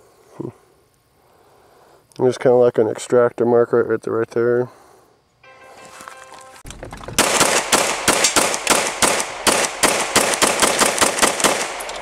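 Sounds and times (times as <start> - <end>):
pistol shots in fast string: 7.2 - 12.0.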